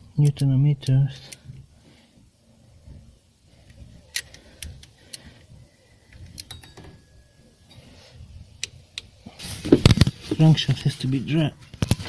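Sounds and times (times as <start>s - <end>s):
tools and parts clicking: 3.6s - 5.3s, 6.1s - 7.1s.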